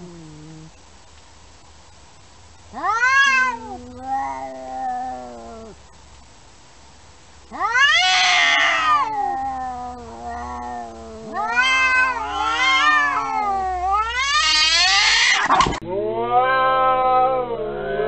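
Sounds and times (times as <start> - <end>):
cat yowling: 2.7 - 5.8, 7.5 - 18.0.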